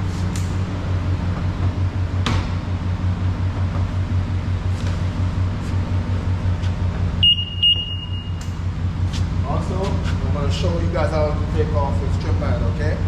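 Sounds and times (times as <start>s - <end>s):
low throbbing mechanical hum: 0.0s - 13.0s
short high beeps: 7.2s - 8.4s.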